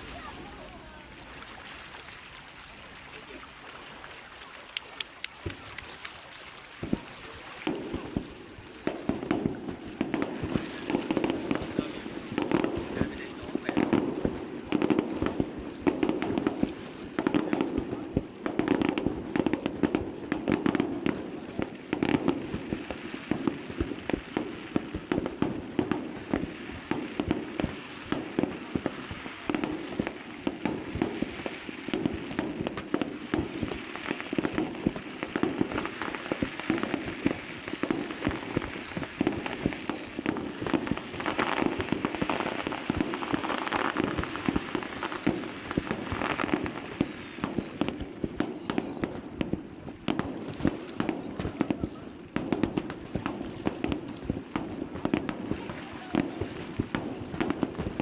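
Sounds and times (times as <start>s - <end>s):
fireworks bangs and crackling: 0.0s - 58.0s
falling firework whistles: 35.4s - 49.3s.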